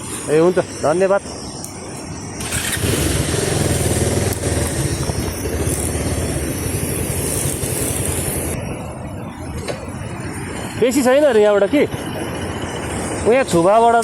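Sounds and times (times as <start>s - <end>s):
high steady hiss: 0.0s - 14.0s
vehicle engine running: 2.4s - 8.6s.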